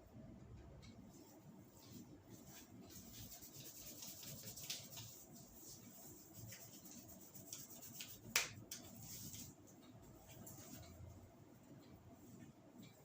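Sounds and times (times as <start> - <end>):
hands rubbing hair and scalp: 1.1 - 9.6.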